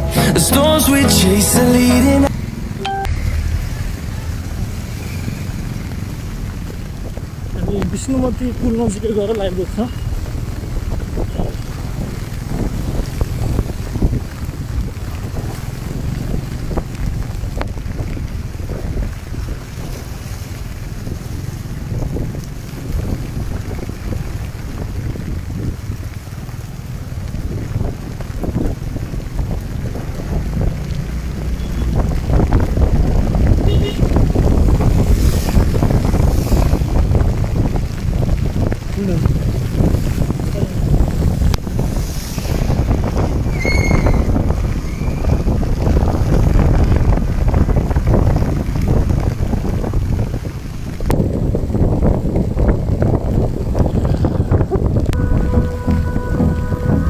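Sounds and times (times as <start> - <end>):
short high-pitched tone: 0.0 - 3.3, 55.2 - 57.0
wind buffeting microphone: 10.1 - 57.0.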